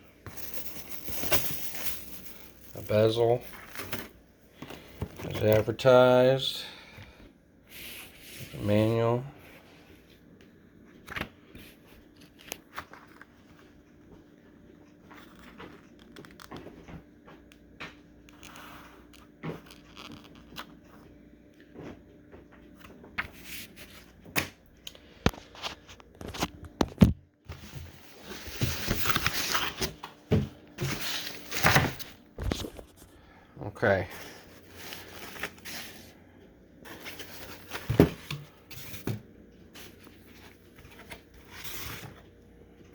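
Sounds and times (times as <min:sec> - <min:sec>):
packaging crinkling and rustling: 0:00.2 - 0:05.7, 0:27.5 - 0:30.1, 0:30.8 - 0:33.2, 0:34.2 - 0:36.1, 0:36.9 - 0:42.3.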